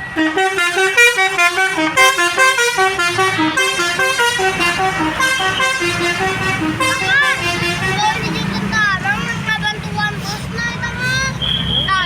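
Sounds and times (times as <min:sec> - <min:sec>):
bus musical horn melody: 0:00.0 - 0:08.4.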